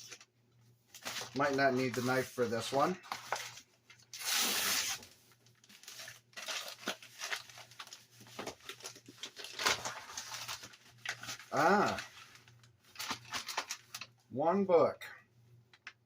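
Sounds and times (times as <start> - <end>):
paper rustling and crinkling: 0.9 - 14.1
envelope ripping open: 4.2 - 14.1.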